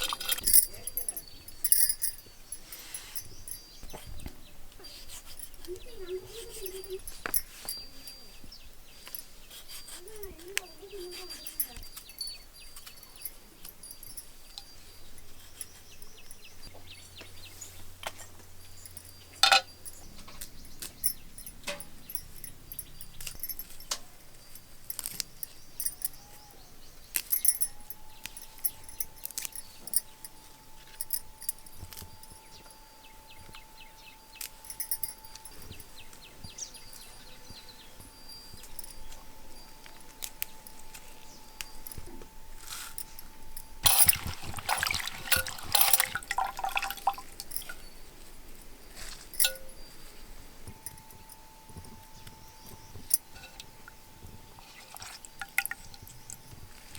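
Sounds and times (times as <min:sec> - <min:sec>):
metal utensils clinking: 0:00.0 - 0:04.0, 0:18.1 - 0:33.6, 0:34.3 - 0:48.0, 0:48.6 - 0:50.1, 0:50.7 - 0:56.9
faint steady tone: 0:00.0 - 0:56.9.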